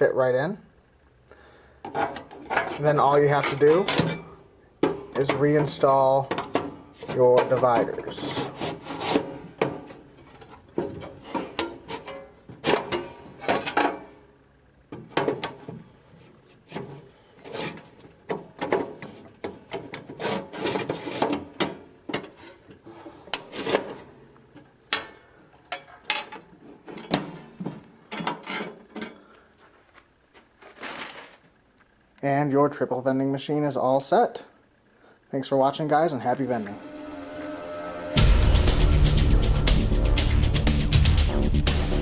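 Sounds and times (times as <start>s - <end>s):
metal scraping and rubbing: 2.0s - 13.8s, 36.1s - 42.0s.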